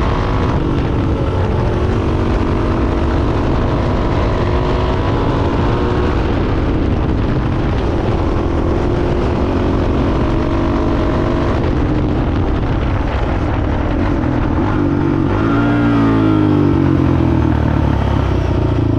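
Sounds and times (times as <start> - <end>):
quad engine running: 0.0 - 18.9.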